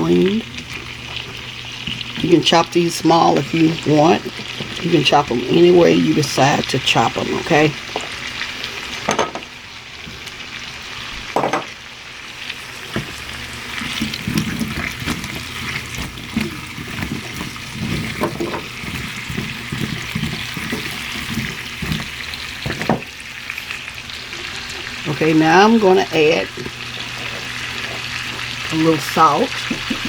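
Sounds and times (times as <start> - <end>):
potatoes sizzling in a skillet: 0.0 - 30.0
utensil scraping a skillet: 12.8 - 25.1, 26.5 - 30.0.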